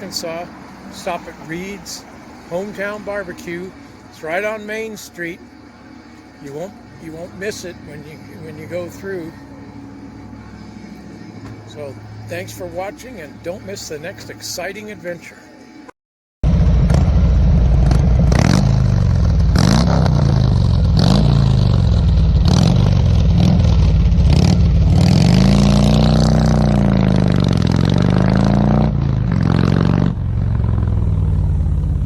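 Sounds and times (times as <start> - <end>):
vehicle engine revving: 16.4 - 32.0.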